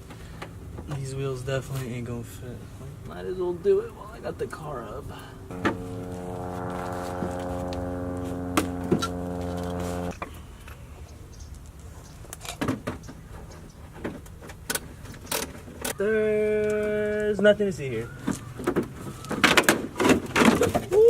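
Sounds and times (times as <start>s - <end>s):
power tool motor running: 5.5s - 10.1s.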